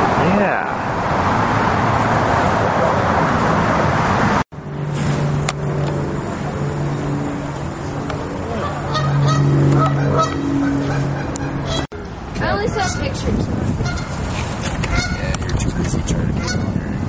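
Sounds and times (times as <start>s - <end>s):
low motor vehicle hum: 0.0s - 17.0s
road traffic noise: 0.0s - 17.0s
geese honking: 5.8s - 11.9s, 12.6s - 13.2s, 13.8s - 15.3s, 16.3s - 16.8s.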